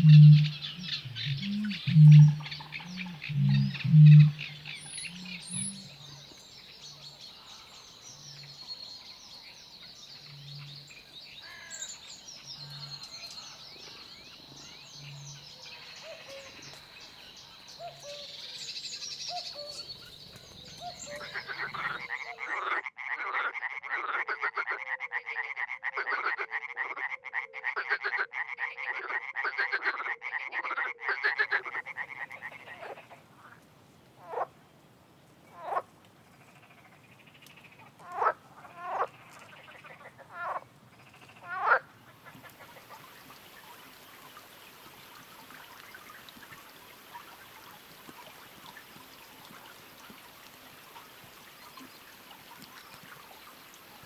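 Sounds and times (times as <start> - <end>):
low repeating animal call: 0.0 - 5.9
bird chirps: 0.0 - 22.4
frogs croaking chorus: 0.0 - 33.6, 34.2 - 34.6, 35.5 - 54.0.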